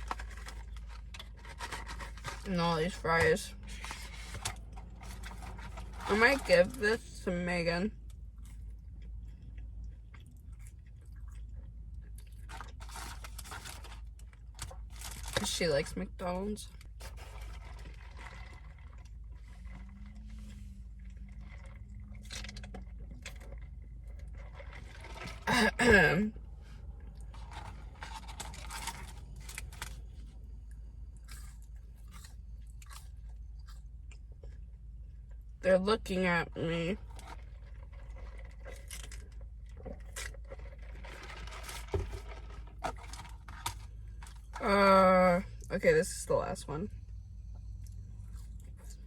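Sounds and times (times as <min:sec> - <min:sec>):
person chewing food: 0:08.1 - 0:15.4, 0:16.8 - 0:25.5, 0:26.5 - 0:35.5, 0:47.0 - 0:49.0
loud crunch or rustle: 0:12.4 - 0:15.4, 0:27.3 - 0:30.2, 0:37.1 - 0:44.6.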